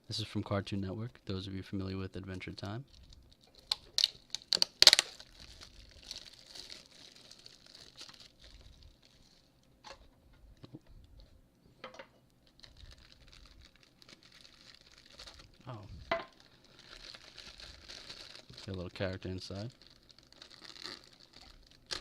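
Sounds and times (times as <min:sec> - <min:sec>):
packaging crinkling and rustling: 0:02.9 - 0:10.1, 0:12.4 - 0:22.0
packaging snapping: 0:03.4 - 0:08.3.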